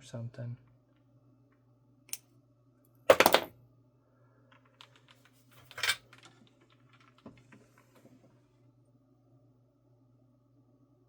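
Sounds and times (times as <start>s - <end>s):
tools clattering on workbench: 3.1s - 3.5s, 5.6s - 6.3s
faint hum: 7.4s - 11.0s.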